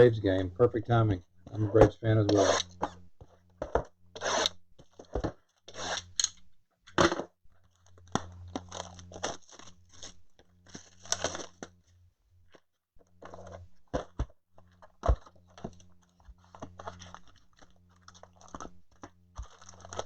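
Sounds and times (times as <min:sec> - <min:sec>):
steady low hum: 0:00.0 - 0:20.0
wrappers tearing and crumpling: 0:08.6 - 0:11.6, 0:16.6 - 0:20.0.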